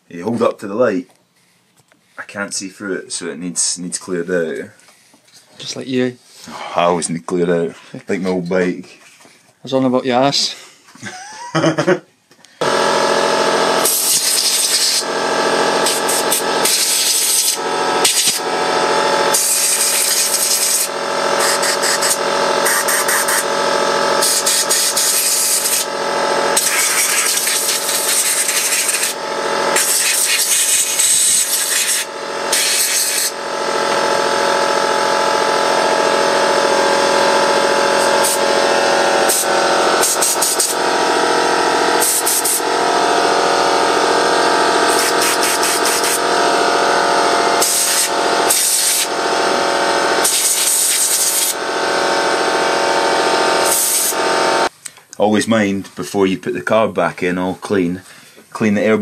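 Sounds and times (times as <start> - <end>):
steady hum: 12.6 - 55.8
compressed air blasts hissing: 13.8 - 15.1, 15.8 - 18.5, 19.2 - 23.6, 24.2 - 33.4, 37.8 - 38.6, 39.2 - 40.8, 42.0 - 42.7, 44.9 - 46.2, 47.6 - 49.2, 50.2 - 51.6, 53.6 - 54.2.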